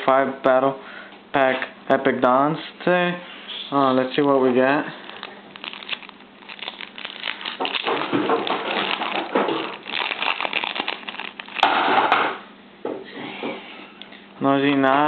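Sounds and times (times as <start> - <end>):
foil wrapper crinkling: 4.1 - 12.2.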